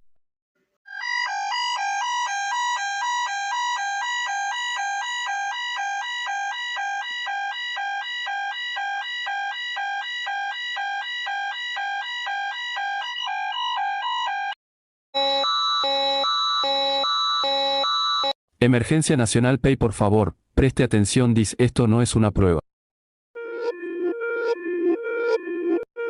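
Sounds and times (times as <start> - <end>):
alternating electronic alert tones: 0.9 - 14.6, 15.2 - 18.4.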